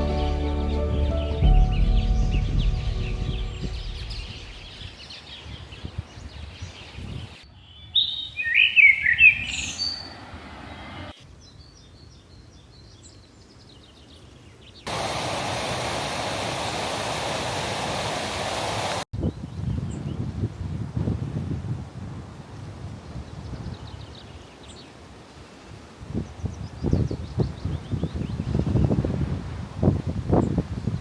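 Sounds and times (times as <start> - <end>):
soft music: 0.0 - 4.8
steady rushing noise: 0.0 - 5.1, 14.9 - 19.0
bird singing gliding high notes: 0.0 - 5.5
birds singing and chirping: 0.0 - 14.8, 26.2 - 29.0.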